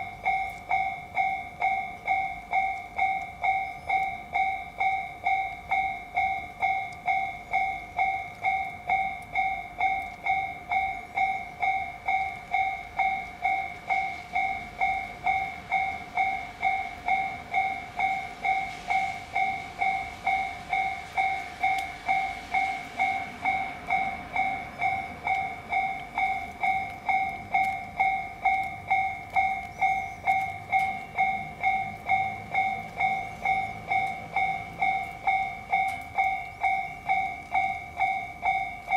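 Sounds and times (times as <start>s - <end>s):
level crossing alarm two-tone ding: 0.0s - 38.9s.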